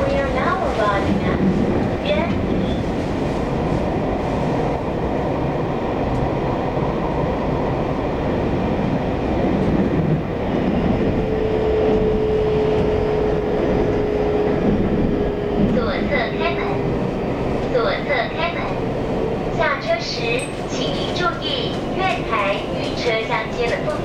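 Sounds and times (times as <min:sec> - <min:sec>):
train wheels rumbling: 0:00.0 - 0:24.0.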